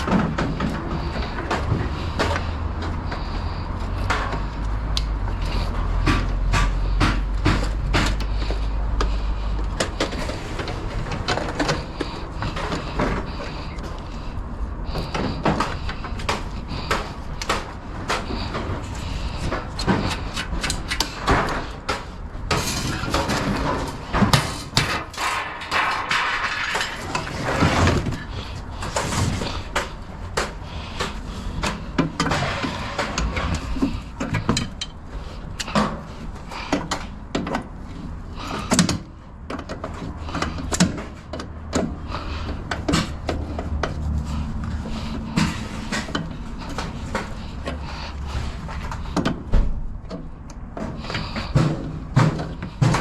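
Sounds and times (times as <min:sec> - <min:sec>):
scrap metal clanking: 0:22.5 - 0:29.9.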